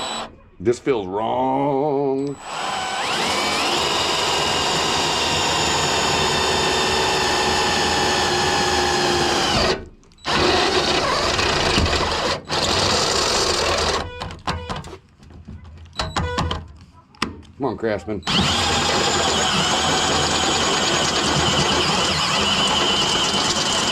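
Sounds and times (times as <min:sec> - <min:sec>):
electric drill boring through steel: 0:00.0 - 0:00.3, 0:02.2 - 0:14.1, 0:18.2 - 0:23.9.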